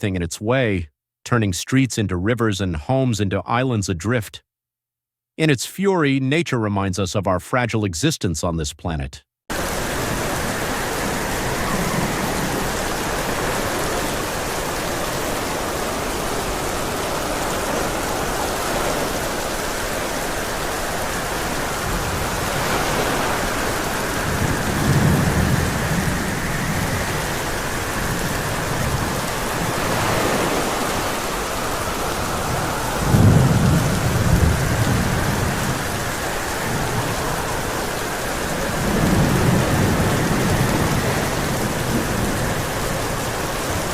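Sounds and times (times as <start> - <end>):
heavy rain falling: 9.5 - 43.9
low rolls of thunder: 9.5 - 43.9.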